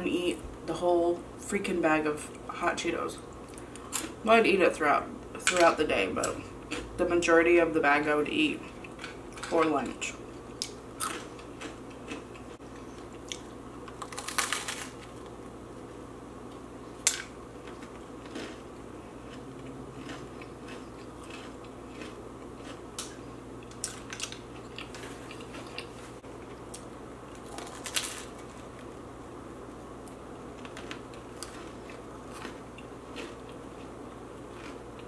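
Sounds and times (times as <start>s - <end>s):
person chewing crunchy snacks: 10.4s - 15.2s, 17.1s - 26.6s, 27.4s - 28.6s, 30.6s - 35.0s.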